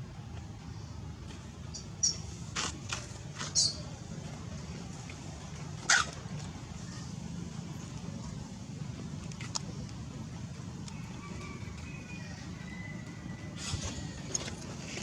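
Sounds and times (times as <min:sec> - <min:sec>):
low background hum: 0:00.0 - 0:15.0
monkey squealing: 0:05.8 - 0:06.2.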